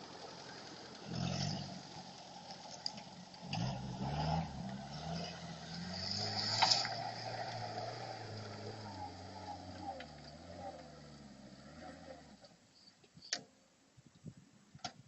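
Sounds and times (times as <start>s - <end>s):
engine revving: 1.0s - 2.0s, 3.4s - 12.4s.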